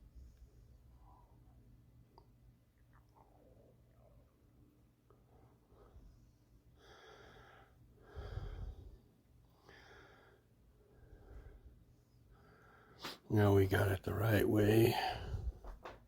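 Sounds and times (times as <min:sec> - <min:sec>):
person breathing close to microphone: 0:06.8 - 0:13.2, 0:14.9 - 0:15.8.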